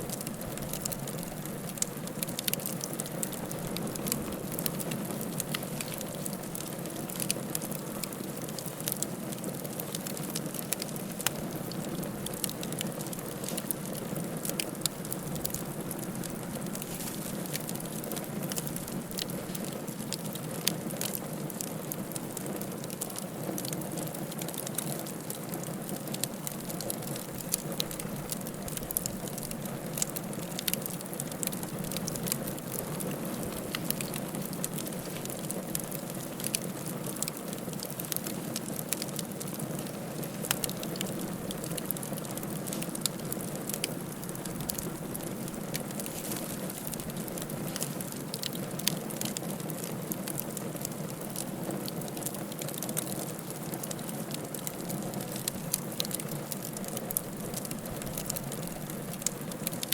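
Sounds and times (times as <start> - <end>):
wood fire crackling: 0.0 - 59.9
hiss of flames: 9.8 - 20.2, 40.0 - 49.2.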